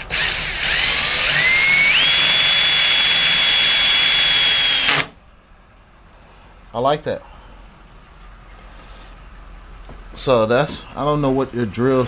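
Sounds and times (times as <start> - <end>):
cordless drill driving a screw: 0.0 - 5.1.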